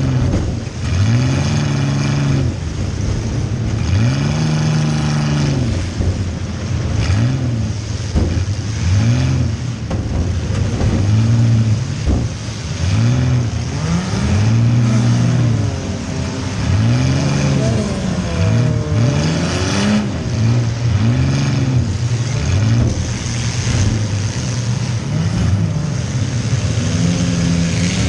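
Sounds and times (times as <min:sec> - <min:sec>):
car engine revving: 0:00.0 - 0:28.0
sharp knocks: 0:08.0 - 0:08.7, 0:09.8 - 0:12.6.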